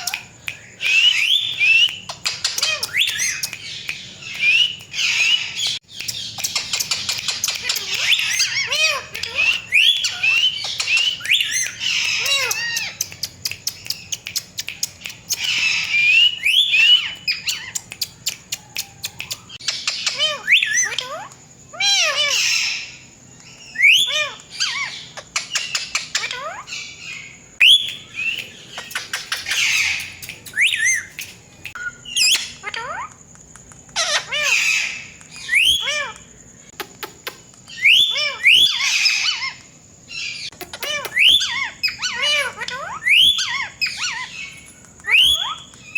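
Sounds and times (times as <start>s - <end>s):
rapid bird clicks: 0.0s - 4.9s, 5.9s - 8.3s, 10.6s - 16.2s, 27.8s - 31.8s, 33.2s - 34.0s
parakeets squawking and chirping: 0.0s - 13.4s, 14.0s - 27.4s, 28.0s - 33.2s, 33.9s - 36.3s, 37.7s - 45.9s.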